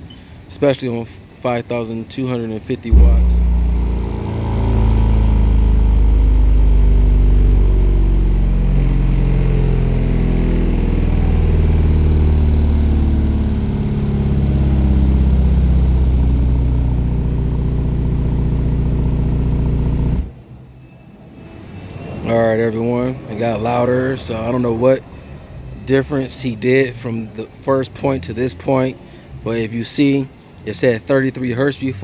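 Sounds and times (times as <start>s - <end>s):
loud bass test tones: 2.9s - 20.3s.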